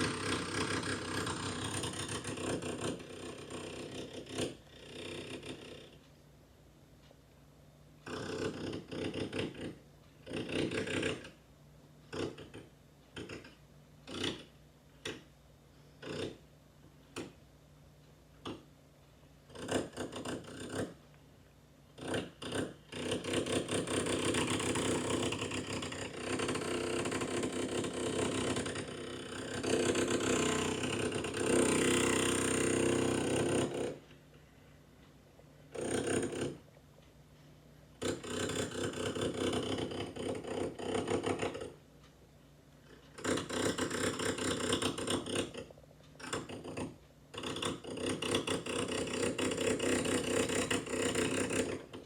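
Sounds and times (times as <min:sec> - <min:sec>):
electric drill motor running: 0:00.0 - 0:04.4, 0:23.2 - 0:34.0.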